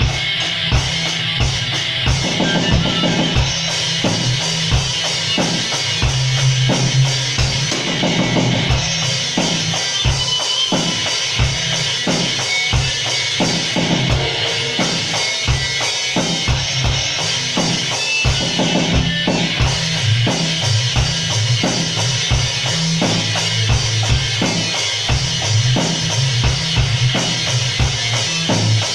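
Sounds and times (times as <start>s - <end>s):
drum kit steady beat: 0.0s - 28.9s
live band jamming: 0.0s - 28.9s.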